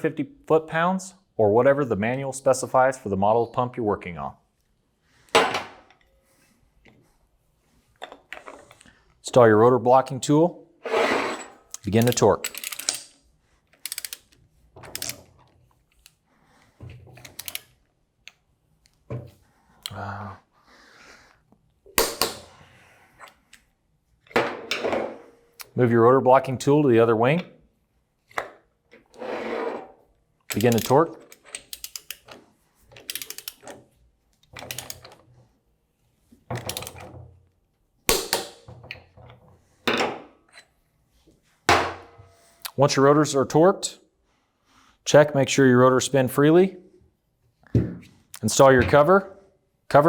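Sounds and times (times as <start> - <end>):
torque wrench ratchet clicking: 12.0 - 13.0, 13.8 - 14.3, 33.1 - 33.6.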